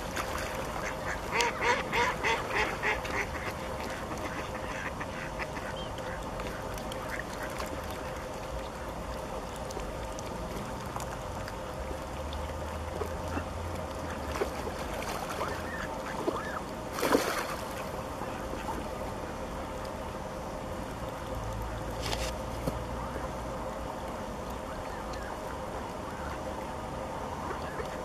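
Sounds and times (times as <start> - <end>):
ducks calling: 0.8 - 7.5.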